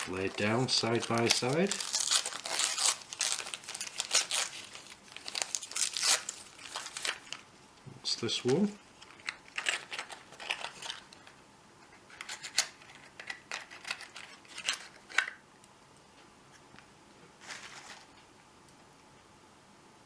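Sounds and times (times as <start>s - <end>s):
cardboard packaging rustling: 0.0s - 7.4s, 8.4s - 11.3s, 17.4s - 18.3s.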